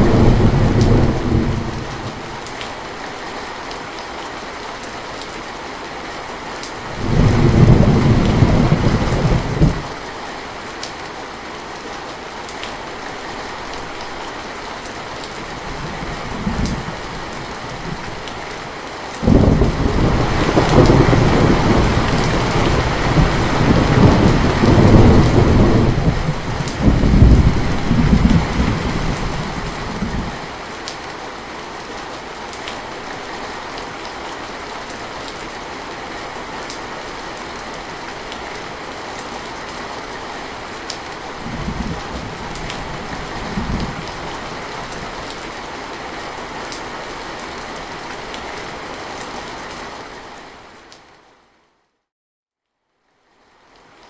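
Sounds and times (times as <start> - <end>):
thunder rumbling: 0.0 - 2.4, 6.9 - 10.0, 19.2 - 30.4
steady rain: 0.0 - 51.9, 52.8 - 54.0.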